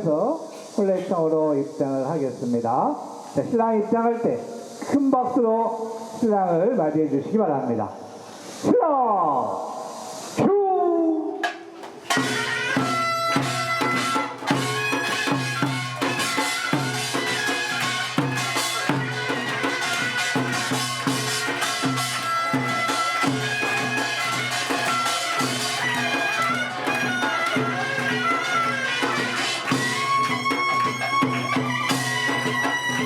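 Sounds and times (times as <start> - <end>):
steady drum beats: 11.4 - 33.0
reedy wind instrument melody: 12.1 - 33.0.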